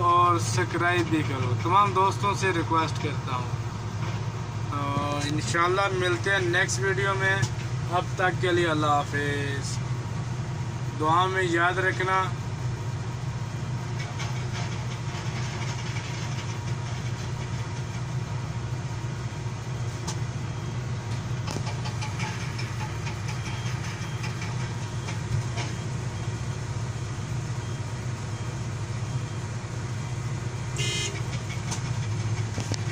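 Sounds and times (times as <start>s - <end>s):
excavator diesel engine running: 0.0s - 32.9s
metal clatter: 21.5s - 25.8s.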